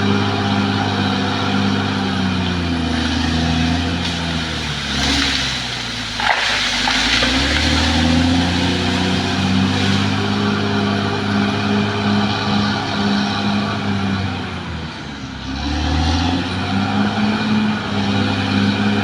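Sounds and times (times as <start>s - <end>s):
bulldozer diesel engine running: 0.0s - 19.0s
sharp crack: 3.0s - 10.5s.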